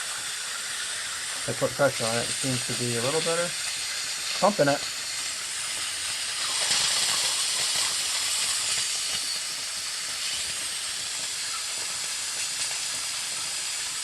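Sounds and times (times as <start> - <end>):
compressed air hissing: 0.0 - 14.0.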